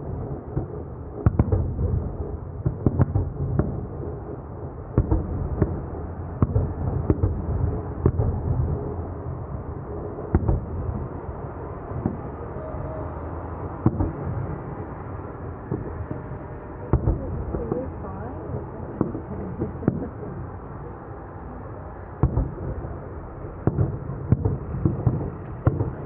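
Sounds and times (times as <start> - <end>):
distant firework bursts: 0.0 - 20.7, 22.0 - 26.0
crowd rumble: 9.4 - 26.0.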